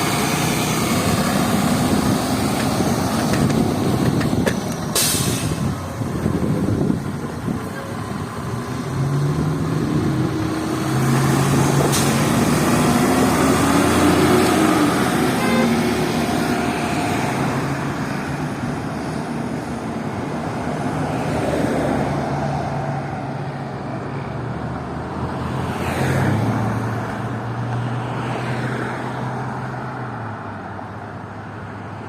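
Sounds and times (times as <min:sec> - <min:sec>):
bus diesel engine droning: 0:00.0 - 0:20.6
road traffic noise: 0:00.0 - 0:32.0
passing vehicle whooshing: 0:08.2 - 0:18.9.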